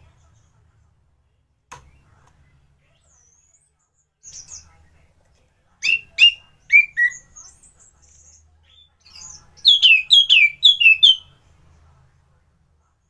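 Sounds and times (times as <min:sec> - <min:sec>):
bird twittering: 0:05.8 - 0:07.6, 0:08.7 - 0:11.3
thrush singing whistled notes: 0:09.6 - 0:11.3.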